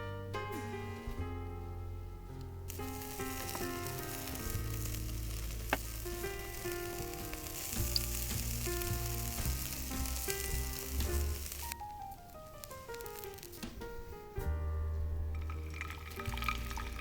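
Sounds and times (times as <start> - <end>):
background music with clear notes: 0.0 - 17.0
food sizzling: 2.7 - 13.9, 15.3 - 17.0.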